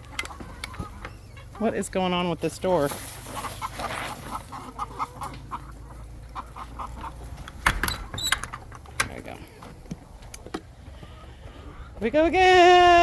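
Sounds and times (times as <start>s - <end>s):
hens clucking: 0.0s - 13.0s
door squeaking open: 7.6s - 8.7s.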